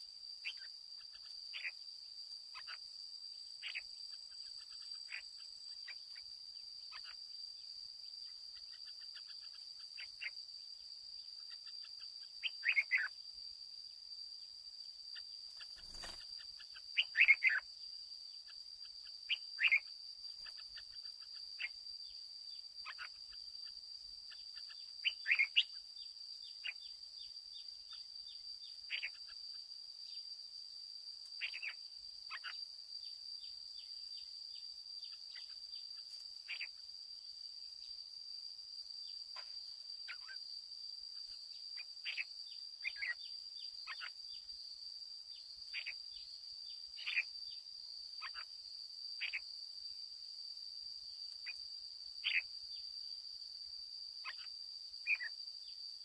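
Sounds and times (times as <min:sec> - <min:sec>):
high insect drone: 0:00.0 - 0:56.0
bird chips: 0:15.6 - 0:16.4.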